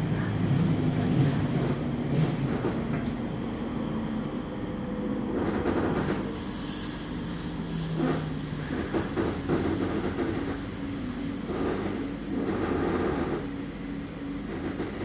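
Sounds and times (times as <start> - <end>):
tram rumbling on rails: 0.0 - 15.0
electric hum: 7.2 - 15.0.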